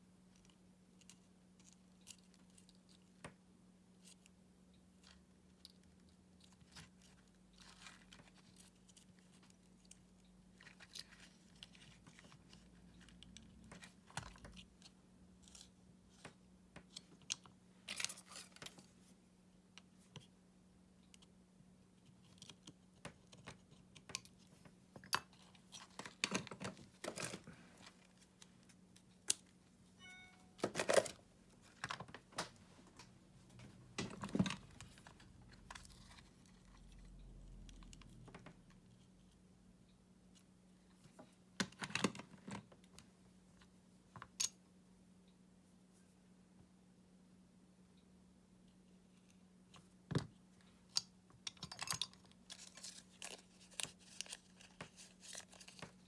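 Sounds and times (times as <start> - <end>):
clicks and taps of small parts: 44.2 - 44.6.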